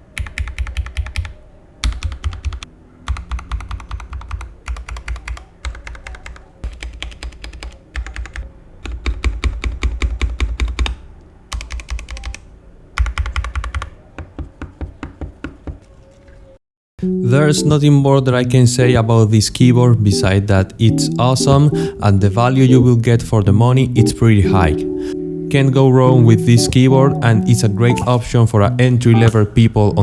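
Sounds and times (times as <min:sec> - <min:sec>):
mechanical keyboard typing: 0:00.2 - 0:14.0.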